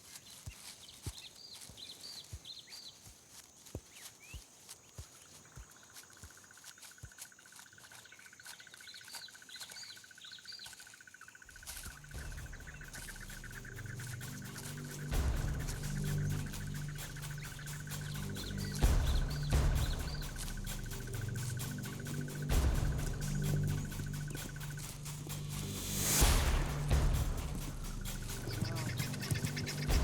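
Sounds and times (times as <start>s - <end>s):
small birds chirping: 0.0s - 30.0s
low music: 11.6s - 30.0s.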